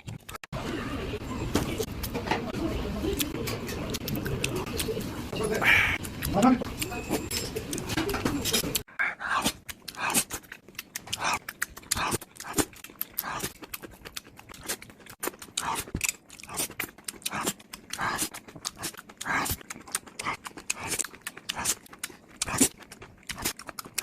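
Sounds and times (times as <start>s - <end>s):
person chewing: 3.0s - 24.0s
wet mouth clicks: 8.7s - 24.0s.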